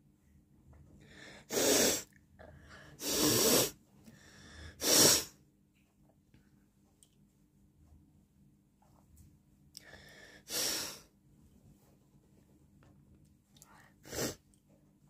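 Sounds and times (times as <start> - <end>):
forceful nose blowing: 1.4 - 2.1, 3.0 - 3.8, 4.8 - 5.4, 10.5 - 11.1, 14.0 - 14.4.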